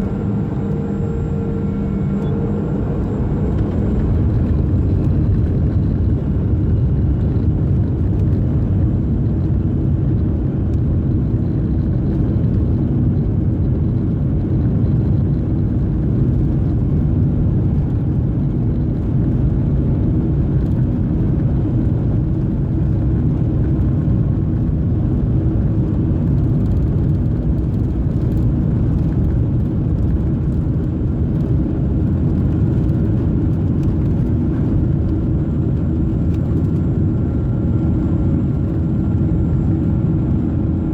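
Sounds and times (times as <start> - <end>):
faint steady hum: 0.0 - 13.8
airplane cabin engine rumble: 0.0 - 40.9.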